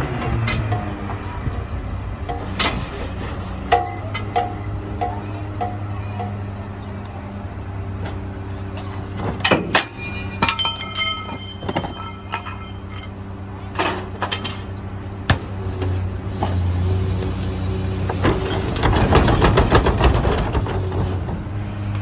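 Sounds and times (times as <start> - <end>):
diesel engine running: 0.0 - 22.0
metallic bangs and knocks: 2.2 - 6.5, 8.0 - 16.6, 18.0 - 21.4.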